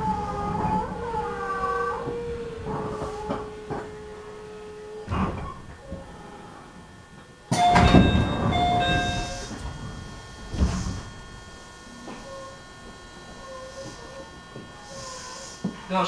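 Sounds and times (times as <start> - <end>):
train hum: 0.0 - 16.0
loud burst of noise with tones: 5.0 - 15.7.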